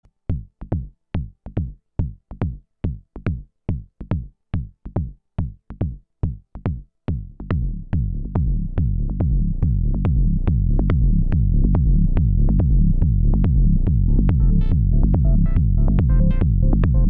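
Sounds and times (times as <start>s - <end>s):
low synthesizer drone: 11.0s - 17.0s
clicky percussive drum synth hits: 13.4s - 17.0s.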